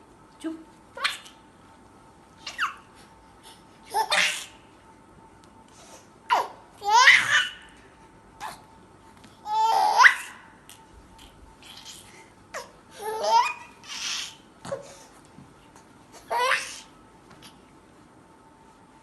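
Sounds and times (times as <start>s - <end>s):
baby squealing and laughing: 2.4s - 2.9s, 6.3s - 7.6s, 9.5s - 10.4s, 13.0s - 14.4s.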